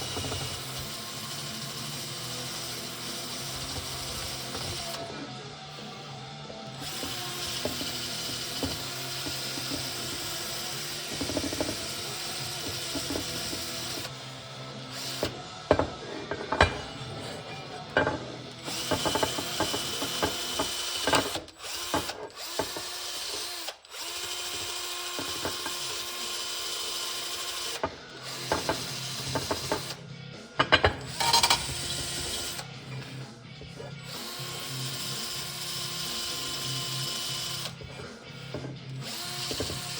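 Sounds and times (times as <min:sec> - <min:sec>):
handheld power tool motor: 0:00.0 - 0:30.0, 0:30.6 - 0:39.9.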